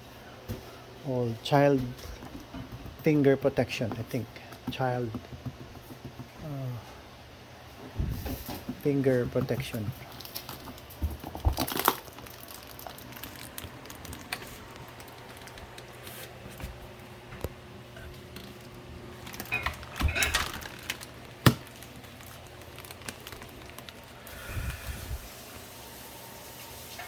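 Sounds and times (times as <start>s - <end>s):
rustling and clattering: 18.0s - 21.6s.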